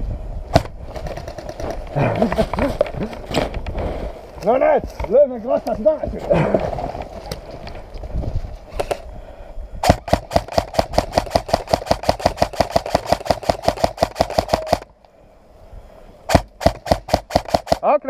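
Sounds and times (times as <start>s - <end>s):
airsoft gun single shots: 9.8s - 14.8s, 16.3s - 17.9s
airsoft gun rapid fire: 9.8s - 14.9s, 16.3s - 18.0s.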